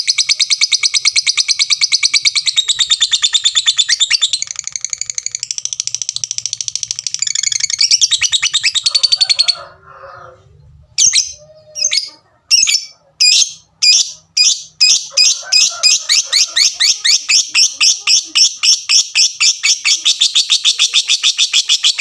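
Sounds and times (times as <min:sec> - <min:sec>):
lovebird rattling chatter: 0:04.0 - 0:08.7.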